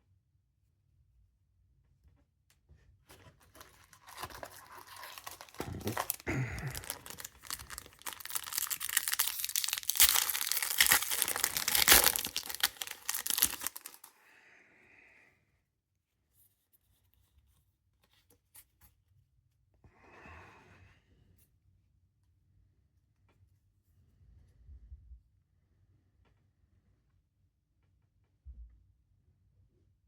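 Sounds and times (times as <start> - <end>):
foil wrapper tearing and crinkling: 3.4 - 14.1.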